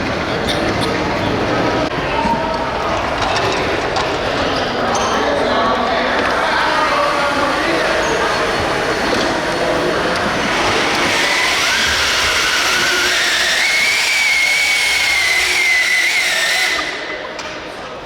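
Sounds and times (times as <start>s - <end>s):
rc truck drivetrain whine: 6.0s - 17.1s.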